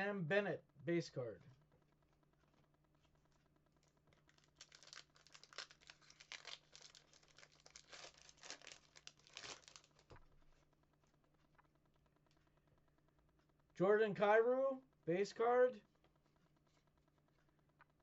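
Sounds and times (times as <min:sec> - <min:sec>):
foil wrapper crinkling: 0:04.1 - 0:10.2.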